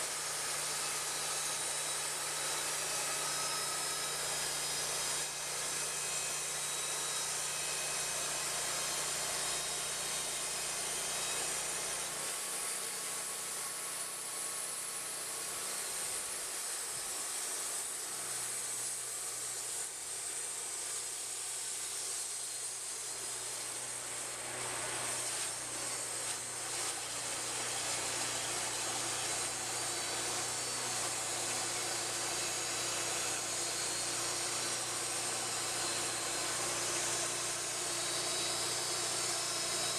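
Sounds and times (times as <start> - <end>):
band sawmill sawing logs: 0.0 - 39.9.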